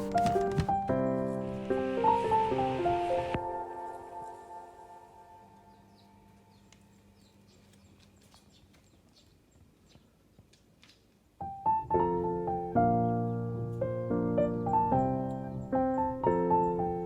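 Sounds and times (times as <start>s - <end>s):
piano melody: 0.0s - 6.7s, 11.4s - 17.0s.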